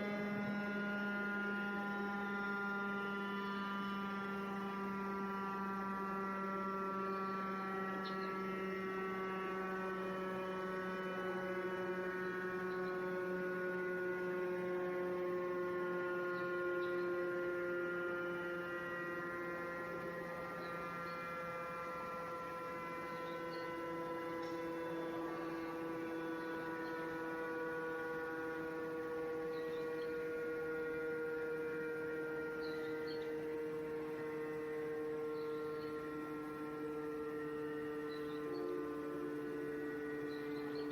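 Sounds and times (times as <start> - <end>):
motor siren steady tone: 0.0 - 40.9.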